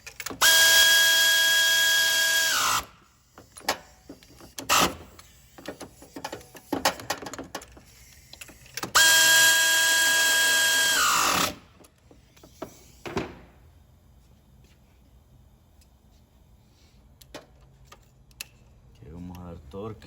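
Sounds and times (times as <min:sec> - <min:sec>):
tools clicking and clanking: 0:00.0 - 0:00.5, 0:03.3 - 0:09.0, 0:17.2 - 0:19.6
power tool motor running: 0:08.9 - 0:11.6.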